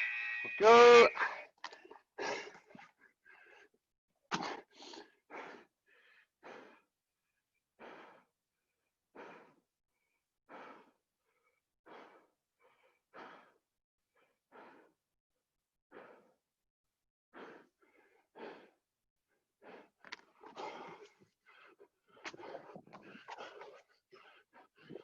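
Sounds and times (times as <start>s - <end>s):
person breathing hard: 2.2s - 3.8s, 4.6s - 7.0s, 7.8s - 15.0s, 15.9s - 16.5s, 17.3s - 18.8s, 19.6s - 25.0s.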